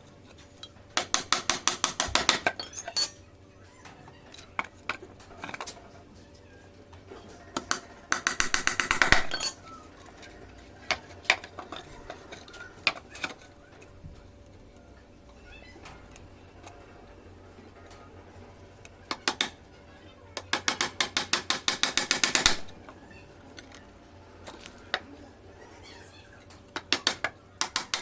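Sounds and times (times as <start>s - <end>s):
rapid mechanical clicking: 20.4s - 22.8s.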